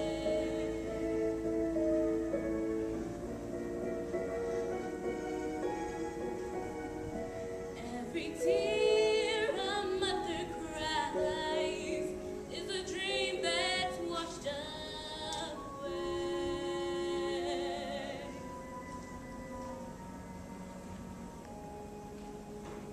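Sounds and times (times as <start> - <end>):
young woman singing a ballad: 0.0 - 1.2, 7.8 - 18.6
musical accompaniment: 0.0 - 22.9.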